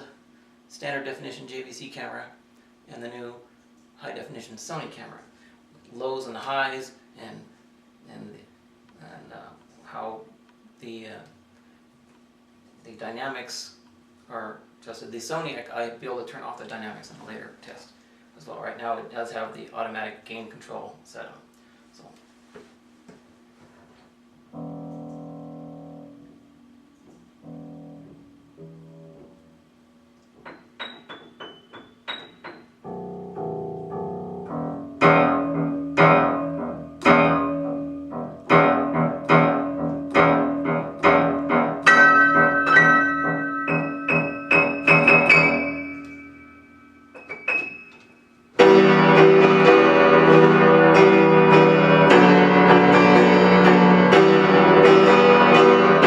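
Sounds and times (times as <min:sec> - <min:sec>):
piano playing: 0:24.5 - 0:56.0.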